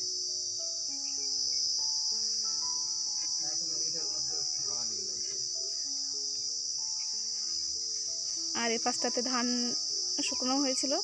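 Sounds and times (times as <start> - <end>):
insect chorus: 0.0 - 11.0
soft melody of held notes: 0.0 - 11.0.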